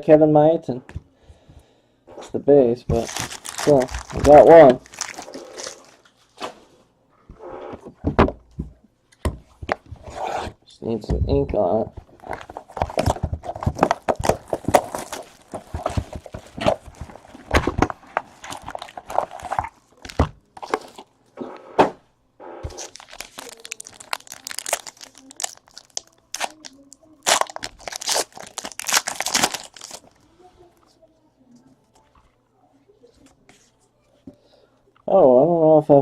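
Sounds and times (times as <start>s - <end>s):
wrappers crinkling and tearing: 2.9s - 6.1s, 12.2s - 21.1s, 22.7s - 30.2s.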